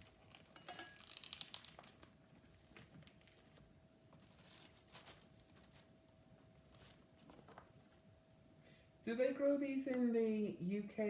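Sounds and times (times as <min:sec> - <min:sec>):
packaging crinkling and rustling: 0:00.0 - 0:08.0.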